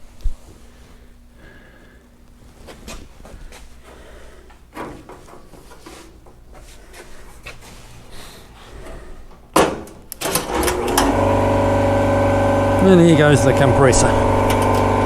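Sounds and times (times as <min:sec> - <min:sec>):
air compressor motor hum: 0:10.2 - 0:15.0.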